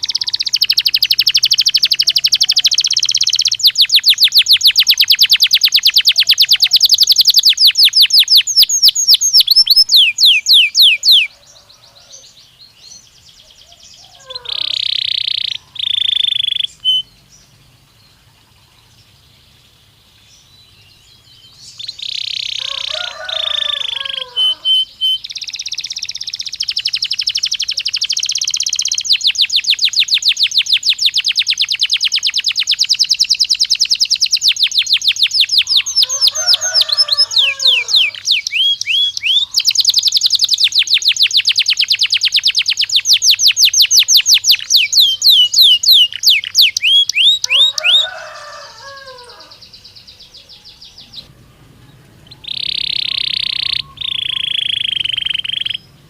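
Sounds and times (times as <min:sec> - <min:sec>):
canary song trills: 0:00.0 - 0:56.0.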